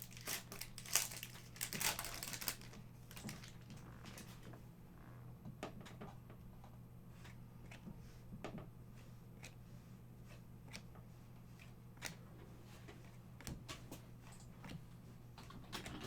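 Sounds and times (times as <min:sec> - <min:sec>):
trading cards clicking and rustling: 0:00.0 - 0:04.4.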